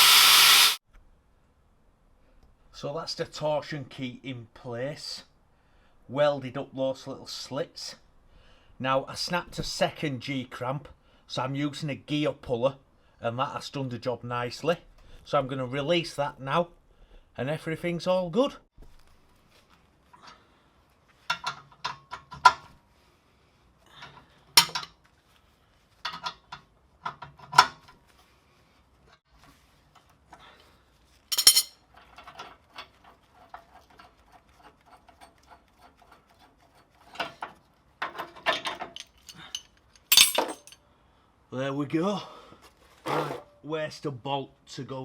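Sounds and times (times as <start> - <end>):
metal tool clanks: 24.6 - 24.9, 31.3 - 31.8, 38.0 - 40.8.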